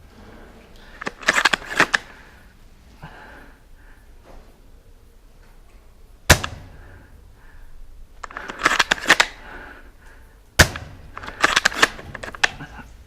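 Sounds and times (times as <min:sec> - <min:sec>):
airsoft rifle shots: 0:06.3 - 0:07.1, 0:08.2 - 0:09.5, 0:10.6 - 0:12.7.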